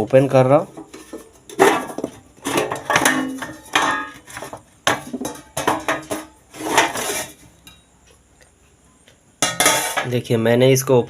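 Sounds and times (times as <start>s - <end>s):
metal cover clanking and rattling: 0.5s - 7.8s, 9.4s - 10.1s.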